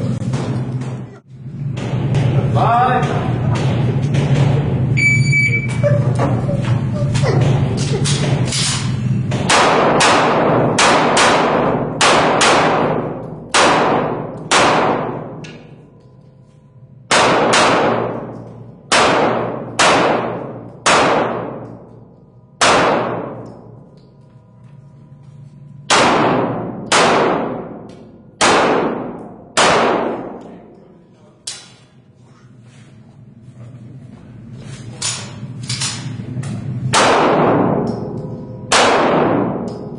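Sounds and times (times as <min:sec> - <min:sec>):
handgun shots echoing: 0:09.3 - 0:15.6, 0:17.1 - 0:22.0, 0:22.6 - 0:23.8, 0:25.9 - 0:30.6, 0:36.9 - 0:39.9.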